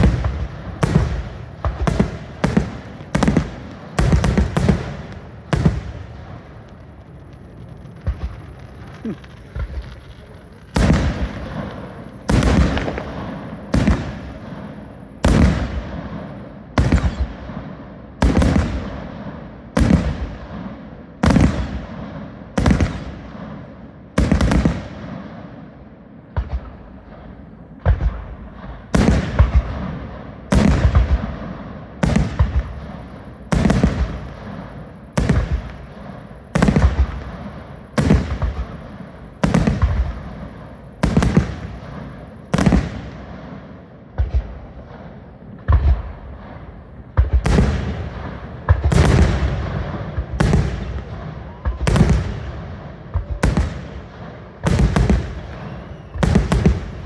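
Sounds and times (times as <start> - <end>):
fireworks bangs with rumbling echo: 0.0 - 57.0.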